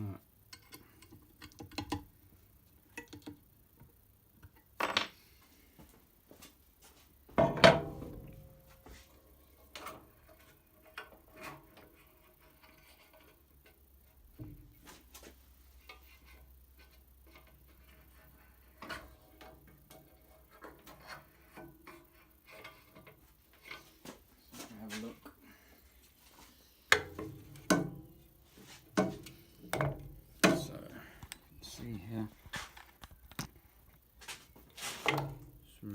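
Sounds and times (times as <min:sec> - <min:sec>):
clicks and taps of metal parts: 0:00.5 - 0:02.1, 0:02.9 - 0:03.4.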